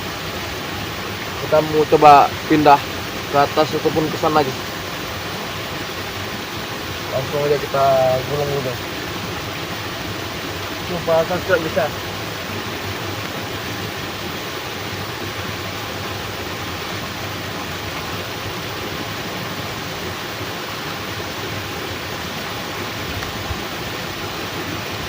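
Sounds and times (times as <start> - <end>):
water rushing: 0.0 - 25.0.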